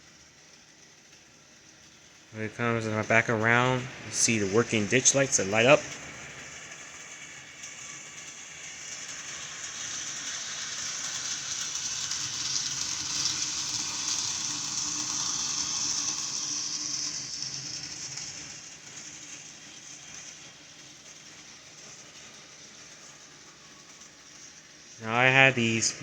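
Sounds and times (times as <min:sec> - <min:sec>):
model train running on track: 0:00.0 - 0:26.0
motor hum and wheel hiss: 0:00.0 - 0:26.0.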